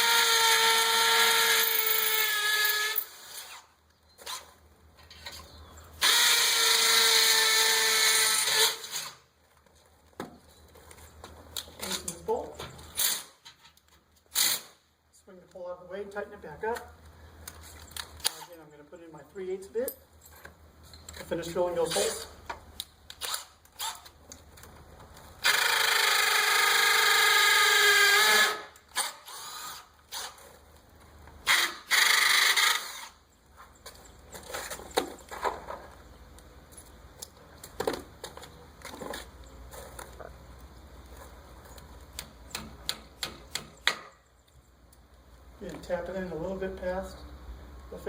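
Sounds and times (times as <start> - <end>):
power drill drilling into concrete: 0.0 - 3.7, 25.4 - 30.4, 31.5 - 33.2.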